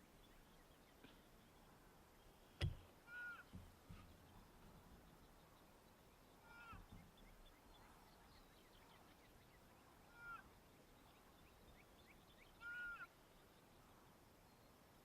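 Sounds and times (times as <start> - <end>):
faint bird chirping: 0.0 - 15.0
honk-like bird call: 3.1 - 3.5, 6.4 - 6.8, 10.1 - 10.4, 12.6 - 13.1.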